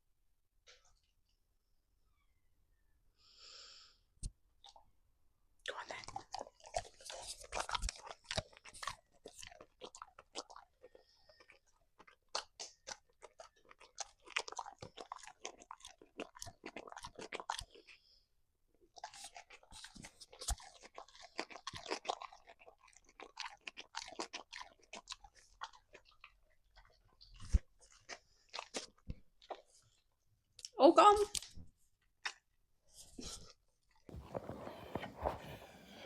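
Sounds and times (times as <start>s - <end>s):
dog chewing crunchy food: 5.9s - 18.0s, 18.9s - 30.0s.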